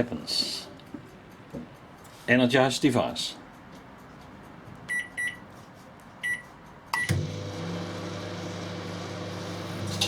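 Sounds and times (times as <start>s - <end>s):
microwave keypad beeping: 4.9s - 5.4s, 6.2s - 7.3s
microwave oven humming: 7.0s - 10.0s.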